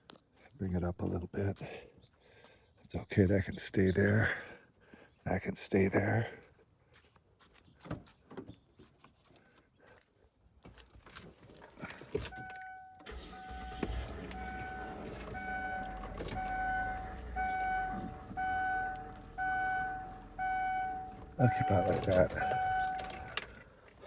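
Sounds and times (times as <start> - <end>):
car engine starting and idling: 12.2 - 24.0
dashboard warning chime beeping: 12.3 - 23.6
clicks: 12.4 - 23.7.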